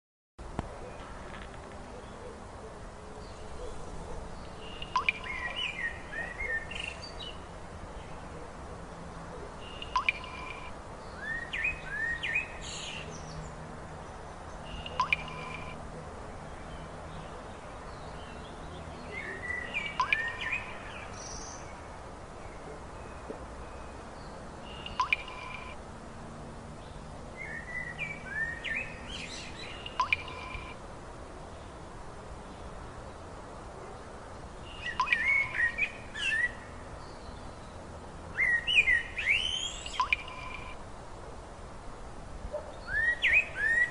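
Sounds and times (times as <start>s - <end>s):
outdoor background hiss: 0.4s - 43.9s
songbird chirping: 0.6s - 8.6s, 9.2s - 25.8s, 26.7s - 30.8s, 31.4s - 40.8s, 42.5s - 43.9s
bird call sweeping upward: 4.7s - 7.2s, 19.1s - 20.7s, 34.8s - 36.6s, 38.4s - 40.8s, 42.8s - 43.9s.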